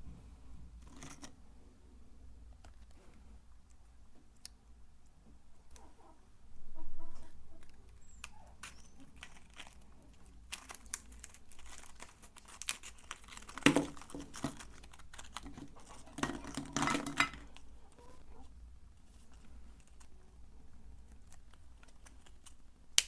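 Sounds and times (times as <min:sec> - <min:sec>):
crinkly material being crumpled: 0:07.2 - 0:22.7.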